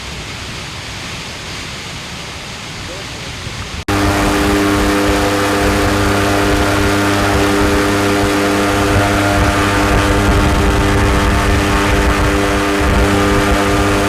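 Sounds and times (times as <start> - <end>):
loud engine running: 3.9 - 14.0
steady rushing noise: 3.9 - 14.0.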